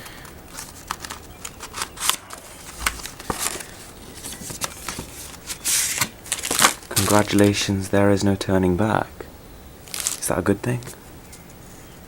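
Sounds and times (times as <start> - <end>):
packaging rustle: 0.0 - 7.6, 9.9 - 11.0
packaging crinkling: 0.0 - 7.7, 9.8 - 10.4.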